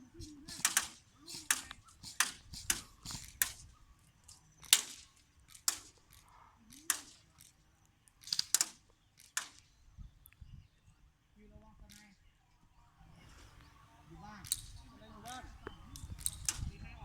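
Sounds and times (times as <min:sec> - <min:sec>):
airsoft gun shots: 0:00.2 - 0:03.8, 0:04.6 - 0:07.5, 0:08.2 - 0:09.8.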